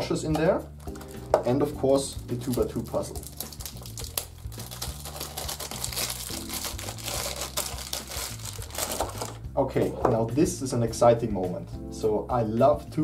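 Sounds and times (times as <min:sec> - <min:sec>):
quiet background music: 0:00.0 - 0:13.0
packaging crinkling: 0:00.8 - 0:01.4, 0:02.4 - 0:09.4.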